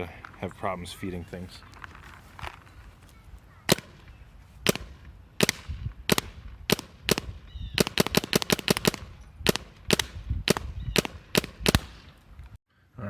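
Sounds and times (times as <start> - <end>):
paintball marker firing: 3.7 - 12.1.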